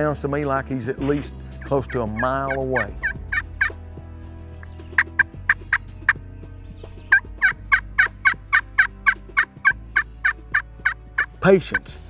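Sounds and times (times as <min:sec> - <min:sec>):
turkey yelping: 0:01.9 - 0:03.8, 0:04.6 - 0:06.2, 0:07.0 - 0:11.8.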